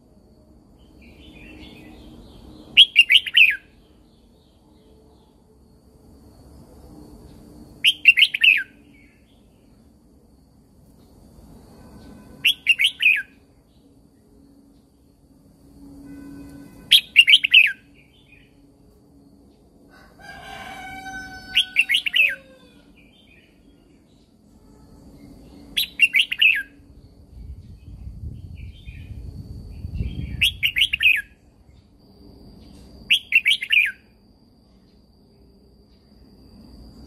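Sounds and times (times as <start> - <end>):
bird singing warbled phrases: 1.1 - 3.8, 7.8 - 9.5, 12.4 - 13.4, 16.9 - 18.6, 25.6 - 26.8, 29.8 - 31.4.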